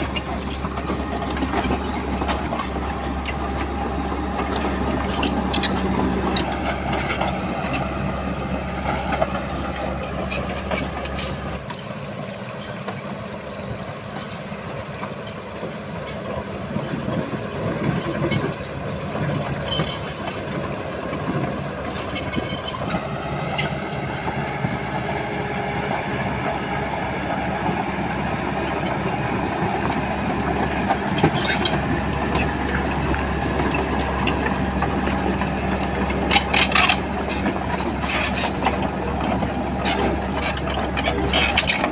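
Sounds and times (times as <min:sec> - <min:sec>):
diesel engines running: 0:00.0 - 0:41.9
sharp clicks and clanks: 0:28.1 - 0:41.9.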